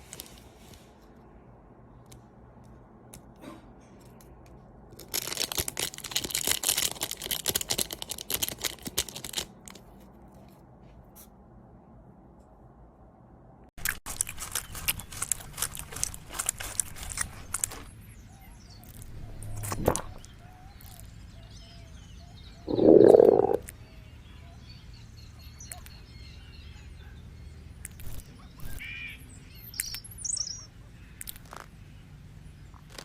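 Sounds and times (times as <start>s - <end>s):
birds chirping: 17.4s - 23.7s.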